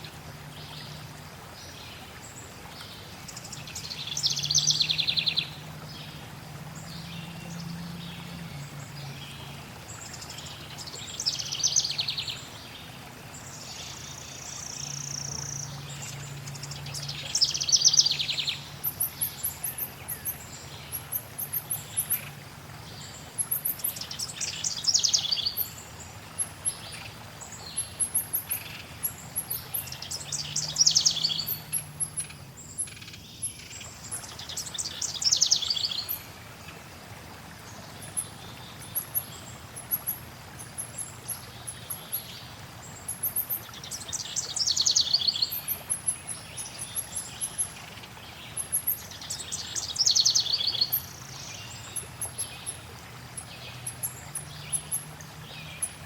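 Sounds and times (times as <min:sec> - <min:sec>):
faint background hiss: 0:00.0 - 0:56.0
songbirds chirping: 0:00.0 - 0:56.0
rapid trilled bird song: 0:03.4 - 0:06.0, 0:13.6 - 0:36.3, 0:38.0 - 0:56.0.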